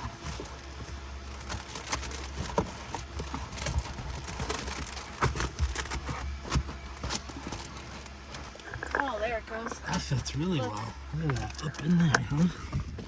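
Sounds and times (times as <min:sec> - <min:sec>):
window cover rustling and scraping: 0:00.0 - 0:08.9
steady low hum: 0:00.0 - 0:13.0.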